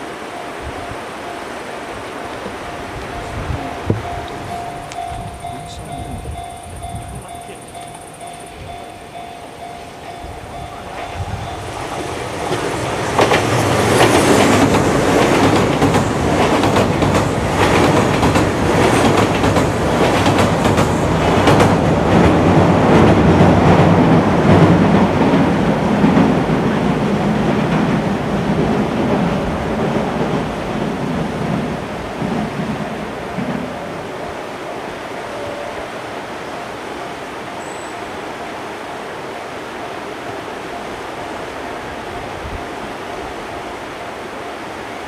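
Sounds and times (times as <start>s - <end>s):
train wheels clattering over rail joints: 9.7s - 33.8s.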